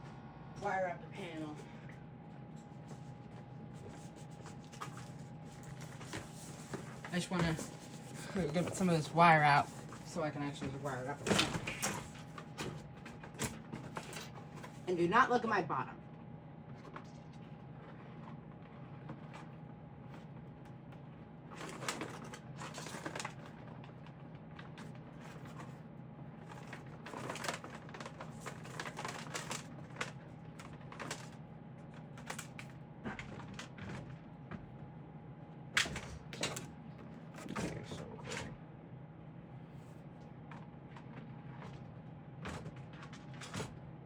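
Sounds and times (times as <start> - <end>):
steady low hum: 0.0 - 44.0
electrical wire rustling and clicking: 26.4 - 34.2.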